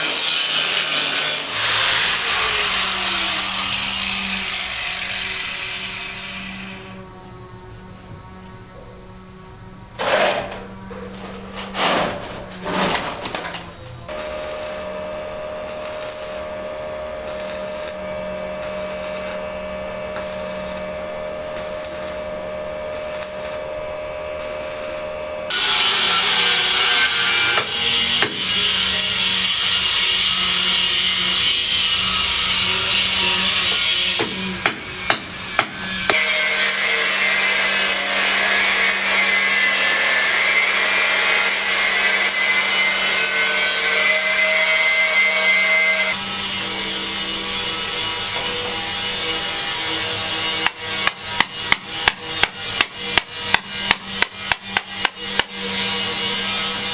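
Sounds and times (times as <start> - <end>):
power cutting tool whining: 0.0 - 56.9
hand saw scraping: 10.0 - 56.9.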